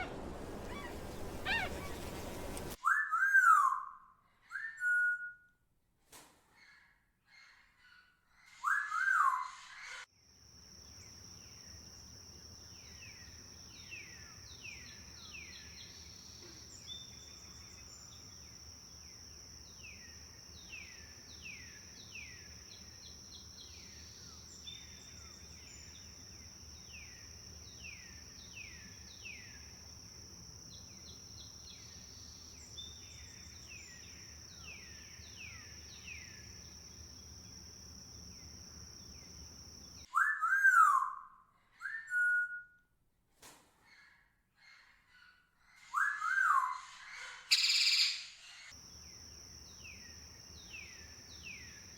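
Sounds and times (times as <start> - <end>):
downward-sliding bird calls: 0.0 - 2.8
low background hiss: 0.0 - 2.8
loud whistled bird call: 0.0 - 3.9, 40.1 - 42.7.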